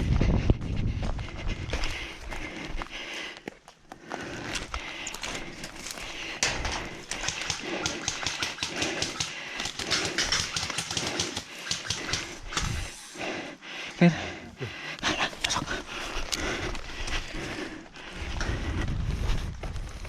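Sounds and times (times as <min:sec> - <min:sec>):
footsteps: 0:00.0 - 0:13.4
heavy breathing: 0:00.0 - 0:19.5
gear rustling and clicking: 0:04.0 - 0:12.9.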